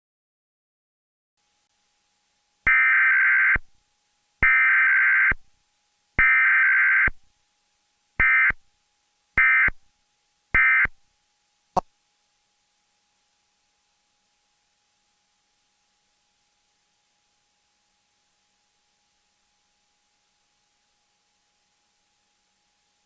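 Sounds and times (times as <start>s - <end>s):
digital data tone bursts: 8.2s - 8.6s, 9.4s - 9.8s, 10.6s - 10.9s.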